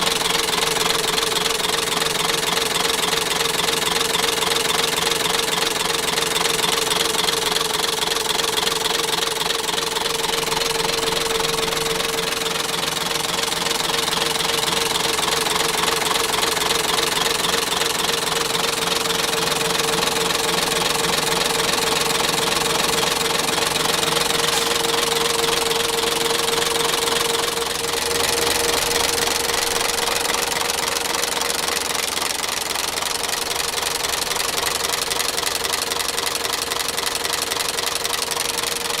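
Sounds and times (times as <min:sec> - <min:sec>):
diesel engine idling: 0:00.0 - 0:39.0
engine whine: 0:20.2 - 0:32.4.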